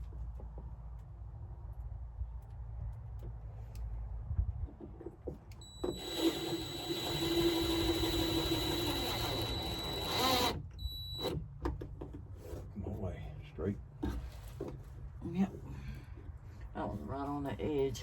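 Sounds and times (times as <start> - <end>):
power drill whining: 5.6 - 11.4.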